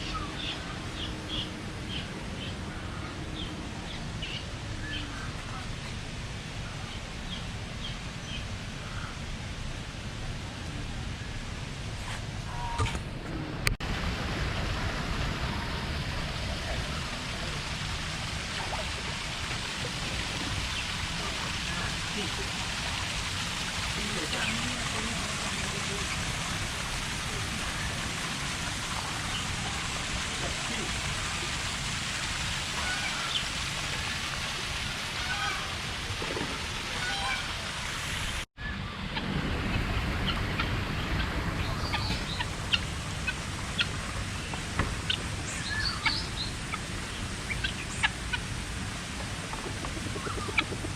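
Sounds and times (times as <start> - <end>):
water rushing: 0.0 - 38.5, 39.1 - 50.9
birds chirping: 40.2 - 48.2.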